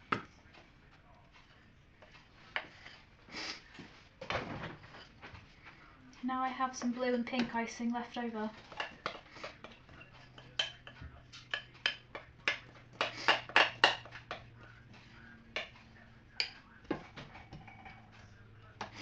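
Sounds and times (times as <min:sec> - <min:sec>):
kitchen utensils and dishes clinking: 0:06.6 - 0:19.0
faint low hum: 0:13.9 - 0:19.0.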